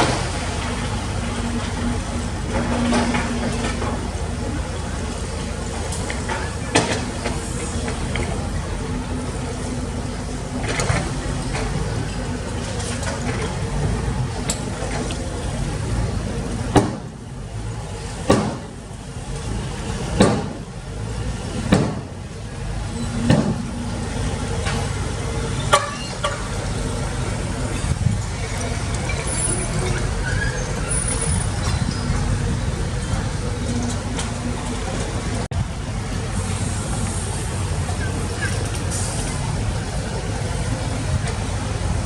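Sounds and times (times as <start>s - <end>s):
diesel excavator engine running: 0.0s - 42.0s
sharp metallic knocks and thuds: 16.7s - 17.2s, 18.2s - 18.8s, 20.2s - 20.7s, 21.6s - 22.2s, 23.1s - 23.7s.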